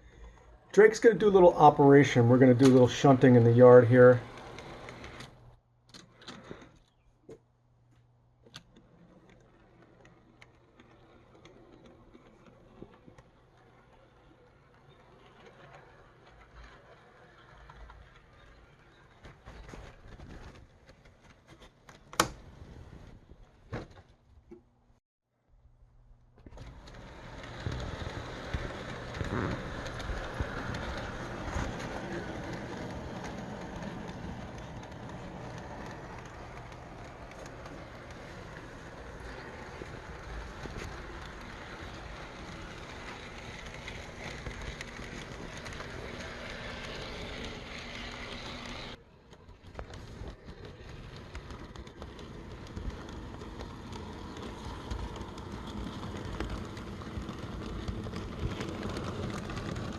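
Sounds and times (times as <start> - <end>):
small track clicks: 0.2 - 22.4, 26.4 - 59.9
model train motor whirring: 1.2 - 5.5, 8.5 - 20.6, 26.6 - 59.9.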